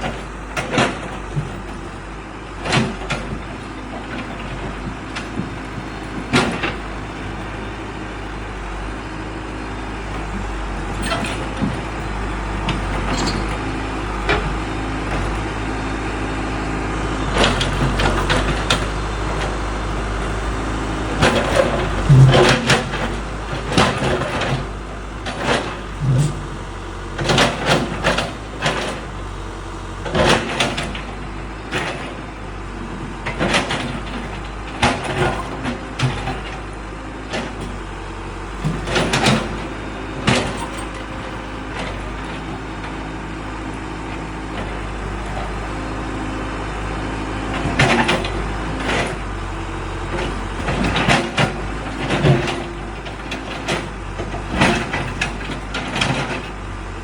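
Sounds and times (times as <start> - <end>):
diesel engine running: 0.0 - 57.0
steel clanking and scraping on concrete: 10.2 - 15.6, 21.2 - 29.2.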